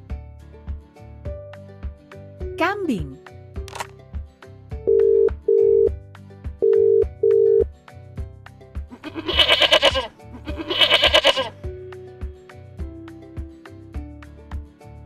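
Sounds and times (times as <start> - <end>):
children's music with steady beat: 1.4 - 3.3
telephone ringing tone beeps: 4.9 - 6.0, 6.6 - 7.7
goat bleating: 8.9 - 11.6.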